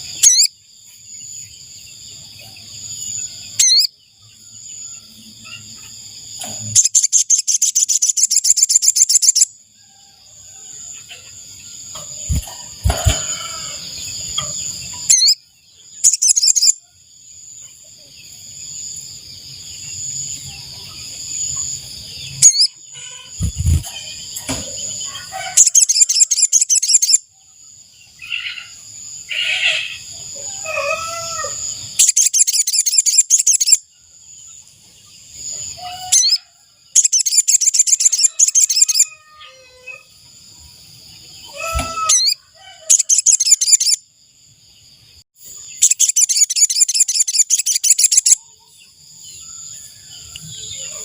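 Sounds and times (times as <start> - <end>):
bird trilling: 0.0 - 0.5, 3.6 - 3.9, 6.8 - 9.5, 12.2 - 14.4, 15.0 - 15.4, 16.0 - 16.8, 22.3 - 24.2, 25.6 - 27.2, 30.8 - 33.8, 35.8 - 36.4, 37.0 - 40.0, 41.5 - 44.0, 45.8 - 48.4
lower bird chirps: 0.0 - 9.6, 11.2 - 44.2, 45.0 - 51.0.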